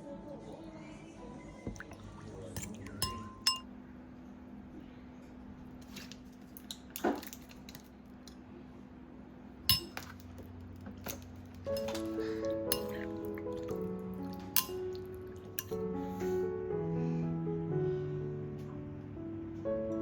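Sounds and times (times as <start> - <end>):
faint steady hum: 0.0 - 5.8
dishes and utensils clinking: 2.6 - 3.7, 9.7 - 10.3, 11.7 - 15.8.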